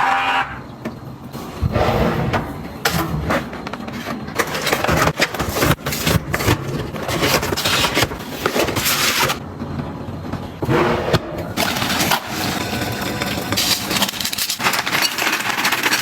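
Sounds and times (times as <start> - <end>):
household items rustling and scraping: 1.3 - 9.4, 10.6 - 16.0.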